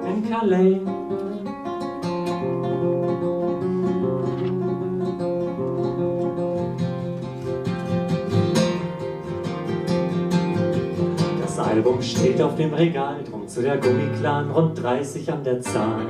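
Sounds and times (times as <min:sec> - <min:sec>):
person singing: 0:00.0 - 0:01.5, 0:11.2 - 0:16.0
acoustic guitar strumming: 0:00.0 - 0:16.0.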